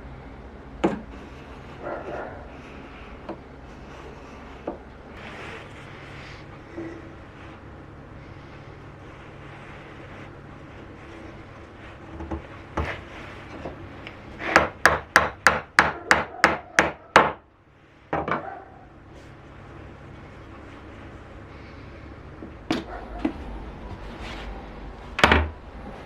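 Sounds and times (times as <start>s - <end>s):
sharp knocks on wood: 14.5s - 17.4s.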